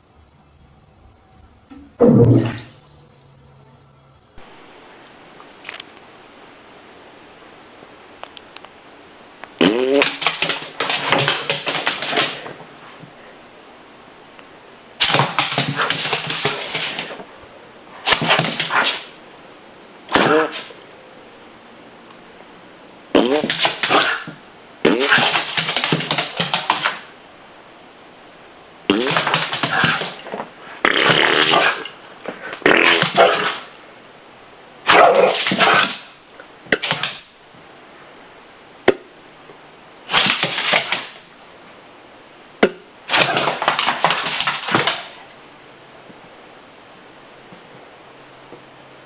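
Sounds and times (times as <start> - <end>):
raspy fart sounds: 1.6 - 3.6, 9.6 - 10.2, 23.2 - 25.4, 28.9 - 30.2, 30.8 - 31.9, 32.6 - 33.7.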